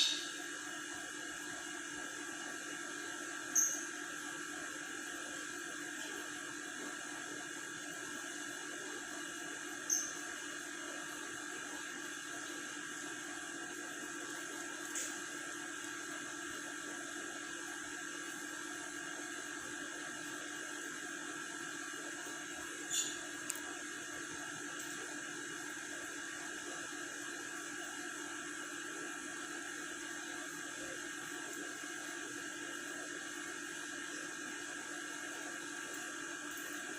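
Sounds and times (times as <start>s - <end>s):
lovebird chirps: 0.0s - 0.4s
steady electrical hum: 0.0s - 36.9s.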